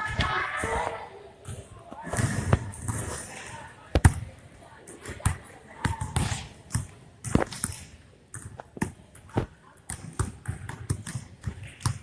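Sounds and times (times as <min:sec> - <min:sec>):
basketball bouncing on a court: 0:05.2 - 0:12.0.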